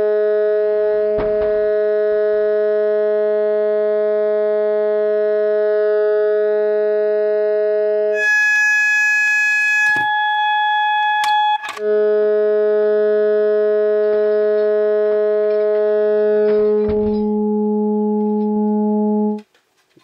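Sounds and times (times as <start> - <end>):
clicks: 8.2 - 11.8
fire alarm tones: 8.2 - 11.9.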